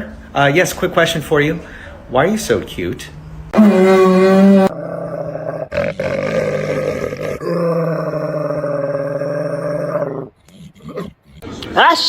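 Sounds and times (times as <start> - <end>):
dog growling: 3.6 - 11.6.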